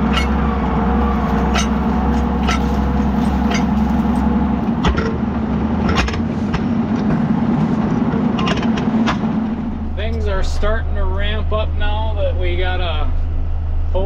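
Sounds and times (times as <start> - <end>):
vehicle engine running: 0.0 - 14.0
clicks and rattles: 1.3 - 5.1.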